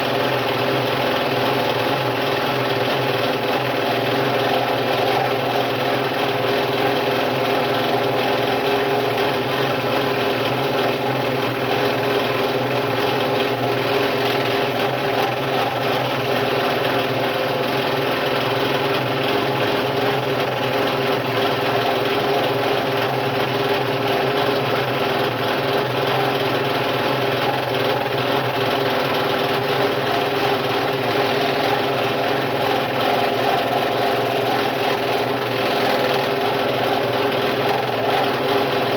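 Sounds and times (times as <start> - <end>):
scroll saw cutting wood: 29.2 - 38.9.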